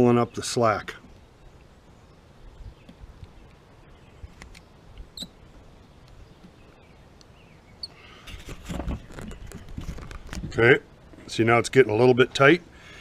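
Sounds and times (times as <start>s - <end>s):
short high squeaks: 5.2s - 5.4s
clicks and handling noise: 8.3s - 11.4s.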